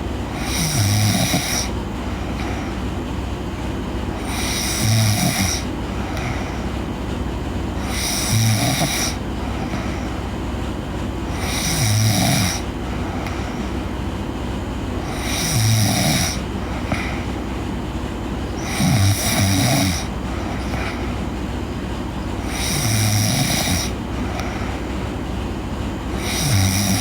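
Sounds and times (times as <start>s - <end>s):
person snoring: 0.3s - 2.8s, 4.2s - 6.5s, 7.8s - 10.0s, 11.3s - 13.6s, 15.0s - 17.4s, 18.6s - 21.2s, 22.4s - 24.8s, 26.1s - 27.0s.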